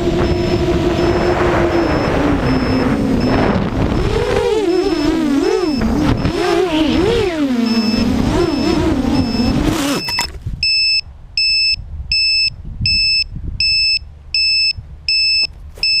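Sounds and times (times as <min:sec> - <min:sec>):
quadcopter motors whining: 0:00.0 - 0:10.4
short high electronic beeps: 0:00.2 - 0:16.0.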